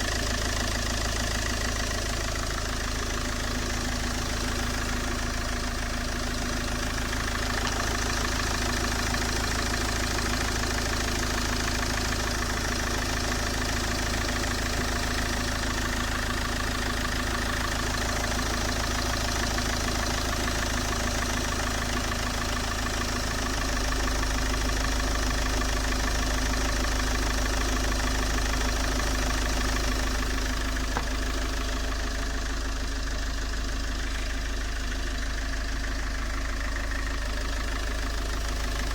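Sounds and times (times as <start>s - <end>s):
diesel engine idling: 0.0s - 38.9s.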